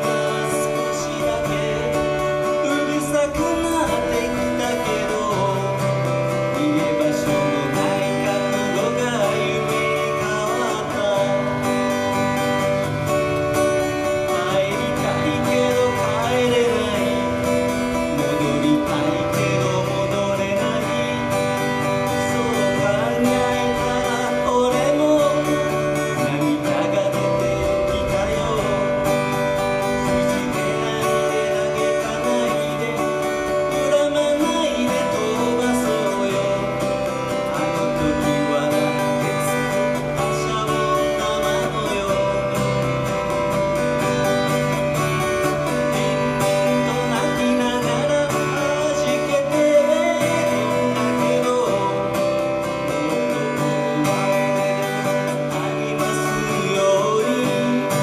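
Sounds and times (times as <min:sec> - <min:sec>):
person singing: 0:00.0 - 0:43.7, 0:44.6 - 0:58.0
strummed acoustic guitar: 0:00.0 - 0:58.0.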